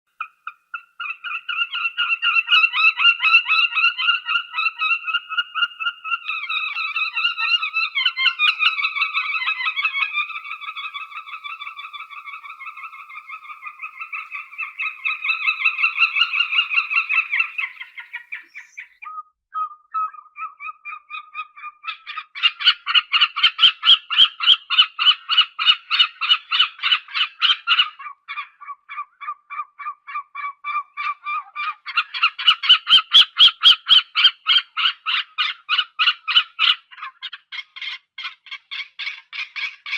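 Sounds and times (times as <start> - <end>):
stork wavering call: 0.2 - 19.1.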